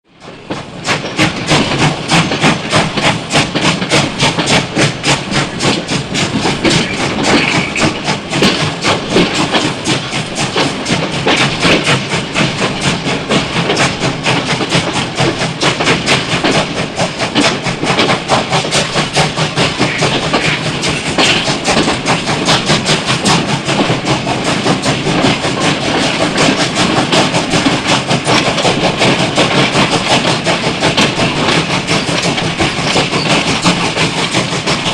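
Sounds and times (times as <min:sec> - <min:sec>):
train rumble and hiss: 0:00.1 - 0:34.9
train wheels clattering: 0:00.2 - 0:34.9.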